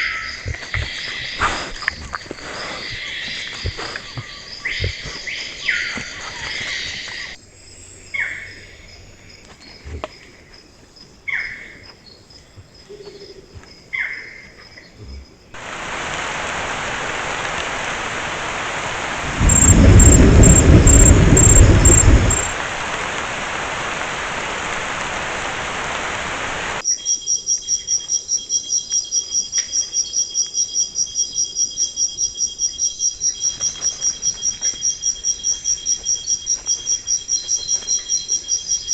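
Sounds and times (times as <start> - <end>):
insect chirping: 0.0 - 38.9
heavy rain hiss: 0.5 - 7.4, 15.6 - 26.8
thunder rumble: 15.6 - 26.8.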